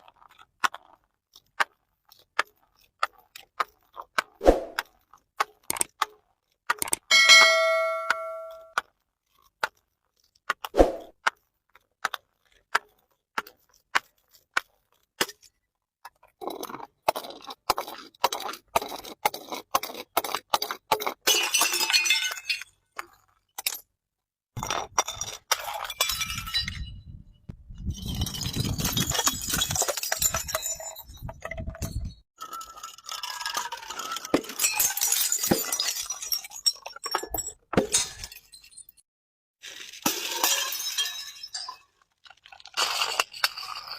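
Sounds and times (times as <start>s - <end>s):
glass breaking and crushing: 21.3s - 23.8s, 24.6s - 27.0s, 28.0s - 31.7s, 32.4s - 39.0s, 39.6s - 43.9s.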